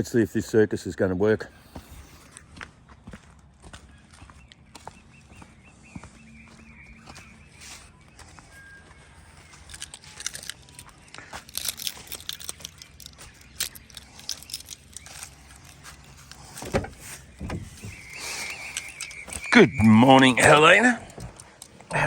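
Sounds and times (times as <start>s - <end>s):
irregular footsteps: 1.7s - 22.0s
rustling: 9.6s - 19.5s
scattered clicks: 18.0s - 22.0s.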